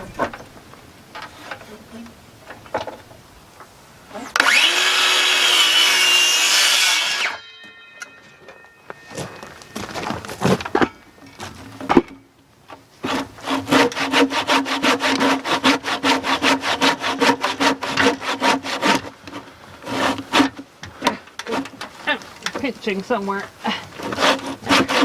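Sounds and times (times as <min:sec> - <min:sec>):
hand saw cutting wood: 0:04.4 - 0:07.4, 0:13.0 - 0:22.0, 0:23.8 - 0:25.0.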